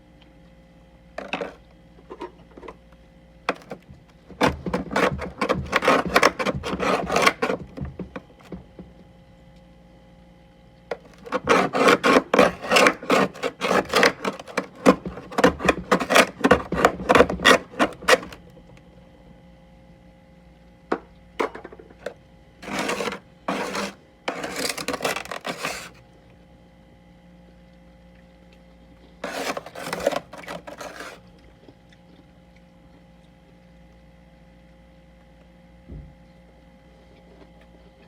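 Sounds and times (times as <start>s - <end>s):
freezer frost being scraped: 3.5s - 3.8s, 4.4s - 8.6s, 11.0s - 18.4s, 22.6s - 26.0s, 29.2s - 31.2s.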